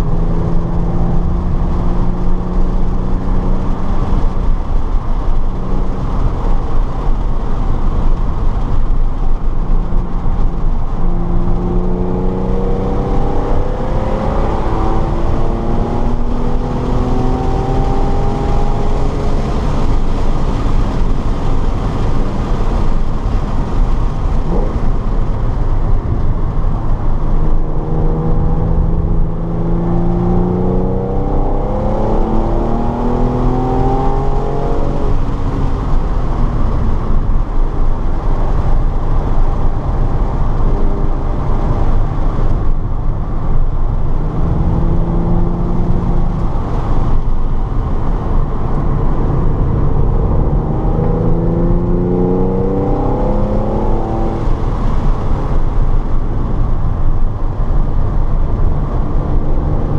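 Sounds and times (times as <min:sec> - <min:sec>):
road and wind noise: 0:00.0 - 0:59.9
race car engine accelerating: 0:26.4 - 0:42.4, 0:43.2 - 0:56.7.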